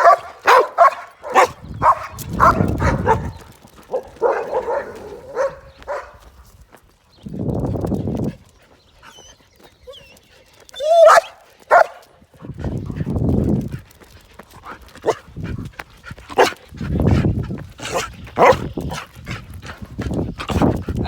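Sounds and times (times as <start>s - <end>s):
dog low drawn-out vocalising: 0.0s - 6.2s, 12.0s - 21.0s
dogs barking and yipping: 0.0s - 6.4s, 8.0s - 12.2s, 15.0s - 21.0s.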